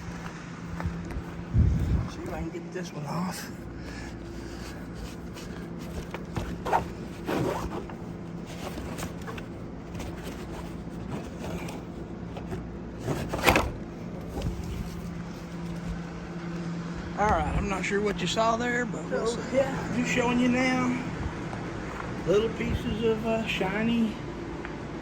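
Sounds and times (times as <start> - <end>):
wheel cover scraping and rustling: 0.2 - 16.5.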